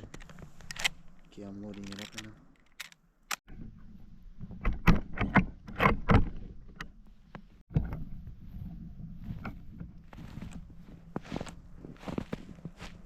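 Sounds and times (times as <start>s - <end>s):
rifle clicks and knocks: 0.0s - 3.5s.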